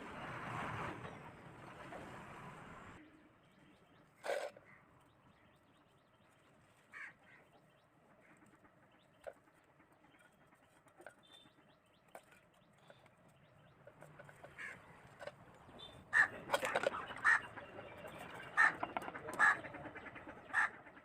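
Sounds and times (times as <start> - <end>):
faint bird calls: 3.0 - 21.0.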